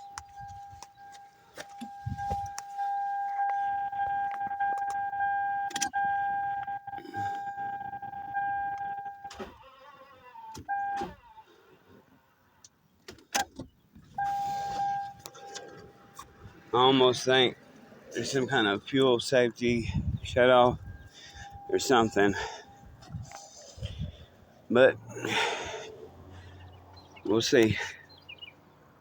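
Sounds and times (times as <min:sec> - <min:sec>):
electronic warning tone: 0:00.0 - 0:09.4, 0:14.2 - 0:15.8, 0:20.3 - 0:23.4.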